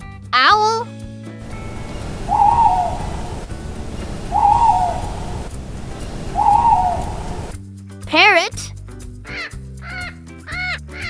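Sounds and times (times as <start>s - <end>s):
low background noise: 1.4s - 7.6s
owl hooting: 1.4s - 7.6s.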